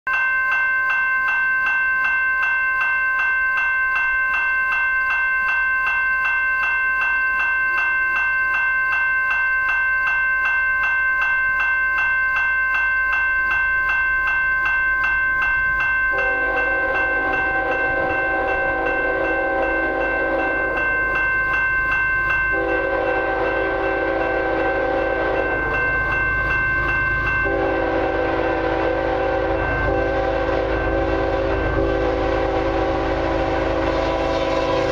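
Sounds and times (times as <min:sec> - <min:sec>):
level-crossing bell dinging: 0:00.1 - 0:34.9
low rumble of train: 0:00.9 - 0:34.9
locomotive air horn: 0:16.1 - 0:20.8, 0:22.5 - 0:25.8, 0:27.4 - 0:34.9.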